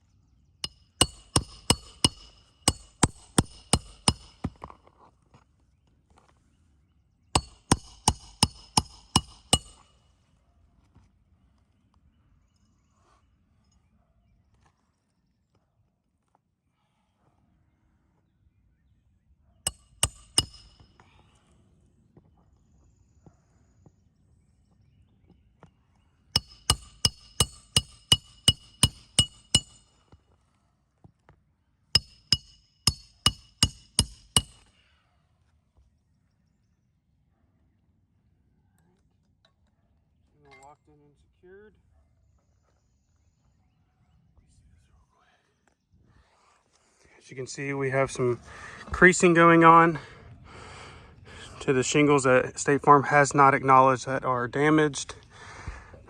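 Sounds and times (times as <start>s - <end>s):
hatchet hammering a nail: 0.6s - 4.7s, 7.4s - 9.9s, 19.7s - 20.8s, 26.4s - 29.8s, 32.0s - 34.6s.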